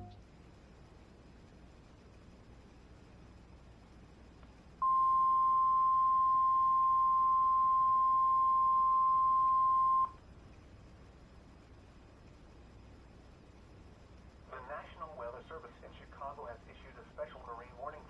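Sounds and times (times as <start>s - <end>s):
steady alarm beep: 4.8s - 10.2s.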